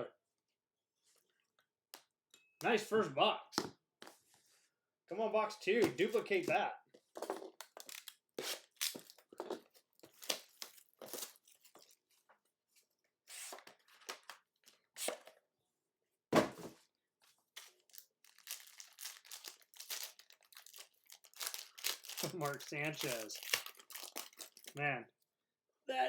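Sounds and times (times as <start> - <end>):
card packaging tearing and crinkling: 7.6 - 9.3, 10.0 - 12.0, 17.5 - 24.8.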